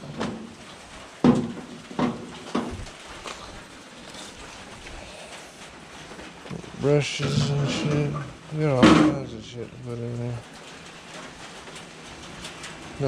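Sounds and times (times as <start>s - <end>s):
welding gear knocking on metal cart: 1.2s - 2.9s.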